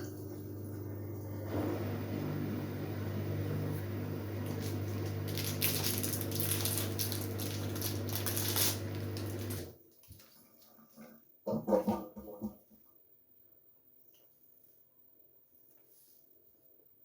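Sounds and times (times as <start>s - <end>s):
washing machine hum: 0.0s - 12.7s.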